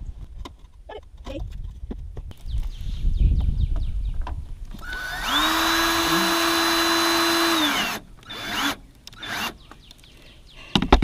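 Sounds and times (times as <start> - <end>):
power drill whining: 4.8 - 9.6.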